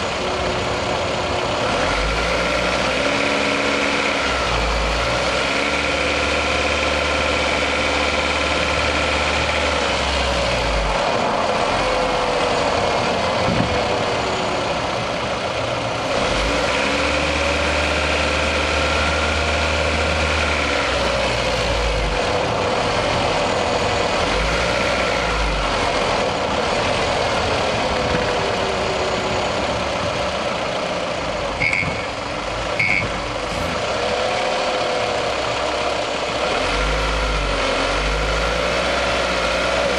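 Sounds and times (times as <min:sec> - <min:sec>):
car engine running under load: 0:00.0 - 0:39.9
short high beeps: 0:31.6 - 0:32.2, 0:32.8 - 0:33.2.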